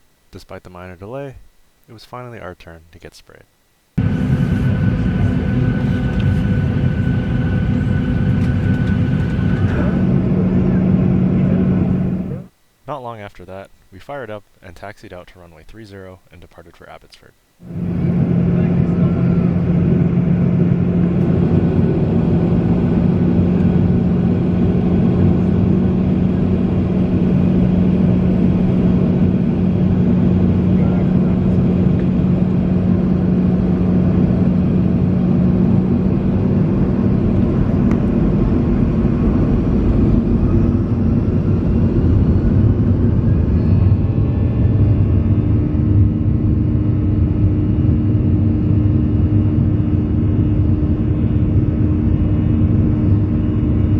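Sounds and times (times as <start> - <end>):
aircraft cabin engine hum: 3.9 - 12.8, 17.4 - 53.9.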